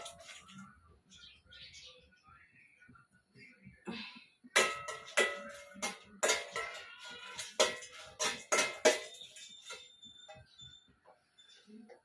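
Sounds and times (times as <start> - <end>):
metal spoon clinking in a pan: 4.6 - 10.5.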